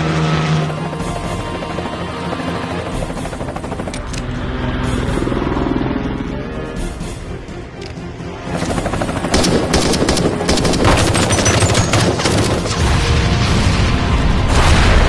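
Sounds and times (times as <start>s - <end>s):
rapid automatic gunfire: 8.6s - 13.0s.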